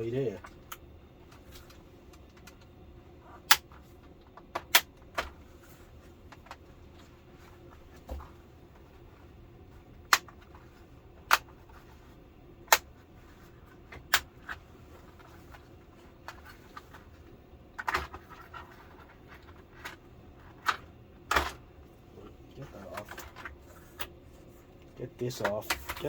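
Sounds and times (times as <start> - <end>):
plastic parts clicking and snapping: 0.4 - 2.7, 3.4 - 5.4, 10.1 - 11.8, 12.7 - 12.9, 13.9 - 17.1.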